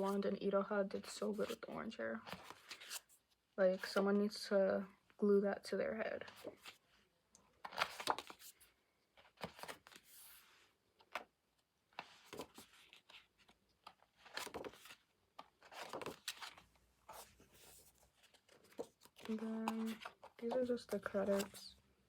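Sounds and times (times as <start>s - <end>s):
paper pages rustling: 1.0s - 4.1s, 6.3s - 7.0s, 7.6s - 11.3s, 11.9s - 21.8s.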